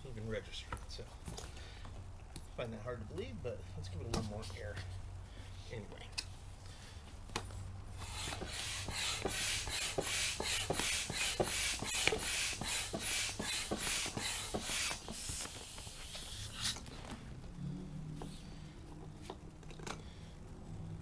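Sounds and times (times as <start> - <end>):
air hissing: 7.9 - 16.9
hand air pump strokes: 8.0 - 16.9.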